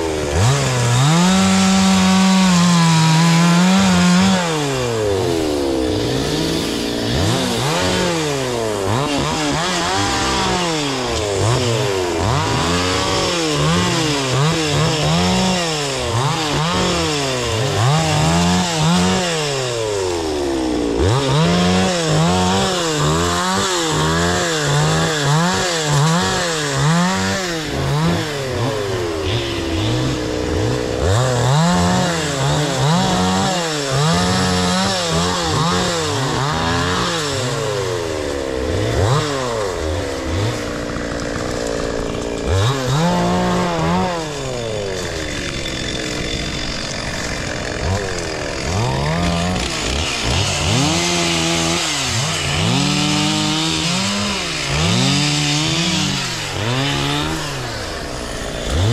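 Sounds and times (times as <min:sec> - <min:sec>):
chainsaw cutting timber: 0:00.0 - 0:58.9.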